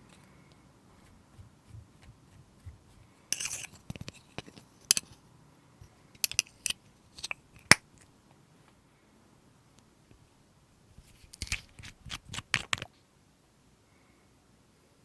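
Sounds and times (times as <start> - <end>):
rustling scrape: 0.9 - 5.2.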